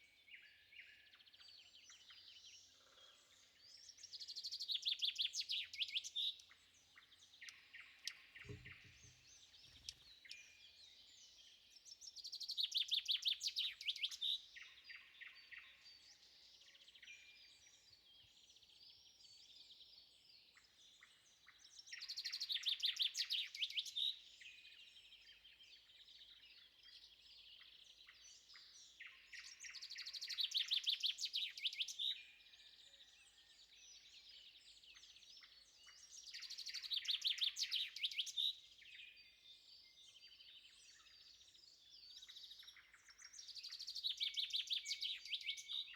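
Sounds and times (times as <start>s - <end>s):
bird singing loud rapid song: 0.0s - 45.9s
quiet bird chirps: 0.0s - 45.9s
low thud: 8.5s - 9.1s.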